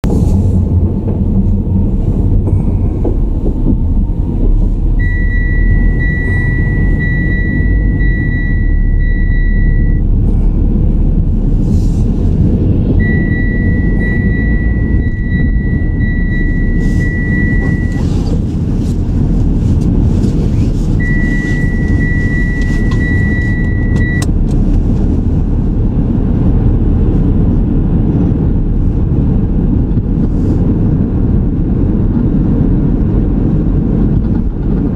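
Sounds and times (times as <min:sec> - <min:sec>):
car road and engine rumble: 0:00.0 - 0:34.9
high electronic tone: 0:05.0 - 0:10.1, 0:13.0 - 0:18.2.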